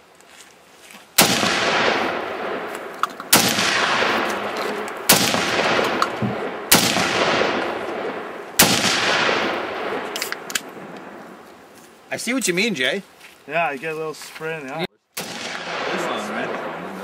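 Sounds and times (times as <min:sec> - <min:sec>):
rifle shots echoing: 0:01.2 - 0:11.3, 0:15.2 - 0:17.0.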